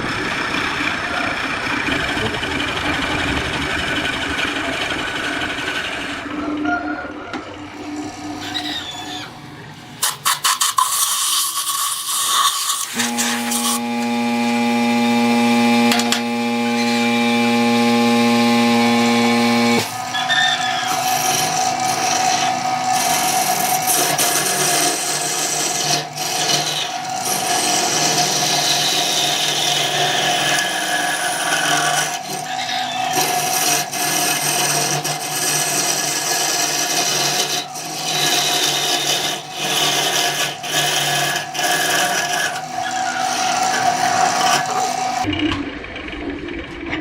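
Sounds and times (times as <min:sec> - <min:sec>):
tool scraping spinning wood: 0:07.7 - 0:45.3
wood lathe motor hum: 0:11.6 - 0:45.3.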